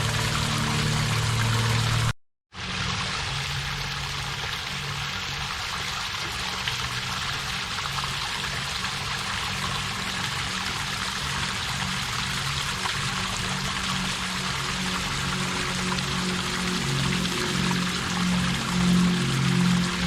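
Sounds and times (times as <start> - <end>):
waterfall rushing: 0.0 - 2.1, 13.3 - 20.0
low pulsing hum: 0.0 - 5.6, 8.2 - 20.0.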